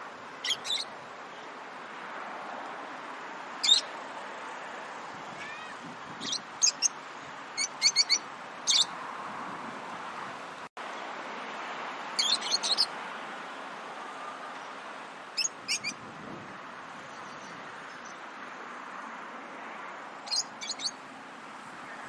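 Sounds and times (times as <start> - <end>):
lovebirds chirping: 0.4 - 1.5, 3.6 - 4.0, 5.4 - 9.0, 12.2 - 12.9, 15.4 - 16.0, 20.2 - 21.0.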